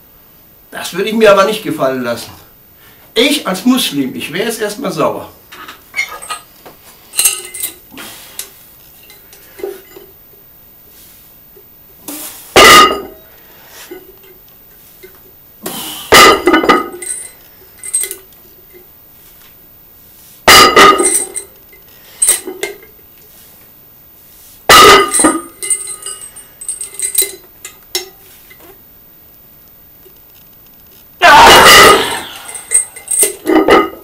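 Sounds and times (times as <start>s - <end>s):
light metal clinks: 7.2s - 7.8s, 16.8s - 18.8s, 25.1s - 28.6s, 32.4s - 33.4s
weights clanging: 20.5s - 21.5s, 24.7s - 27.4s.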